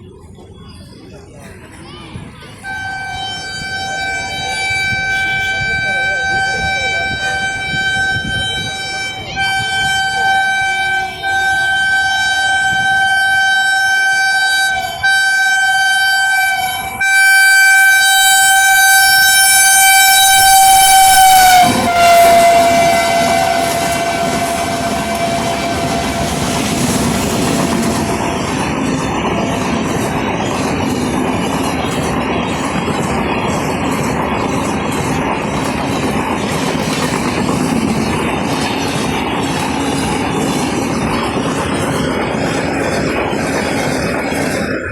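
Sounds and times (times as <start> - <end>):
train rail clatter: 0.0 - 44.9
locomotive horn: 2.6 - 28.2.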